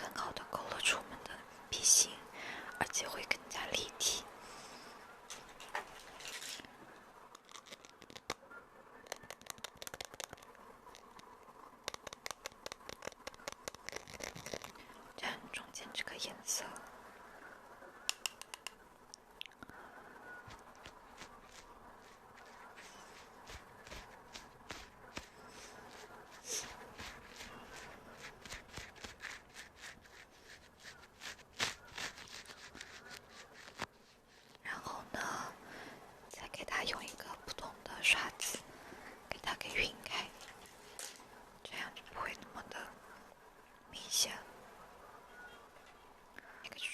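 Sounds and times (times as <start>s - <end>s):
crisp clicks and scratches: 7.3s - 8.4s, 9.0s - 15.0s, 20.5s - 34.7s
makeup brush strokes and taps: 7.3s - 8.4s, 9.0s - 15.4s, 18.1s - 18.8s, 20.5s - 34.8s.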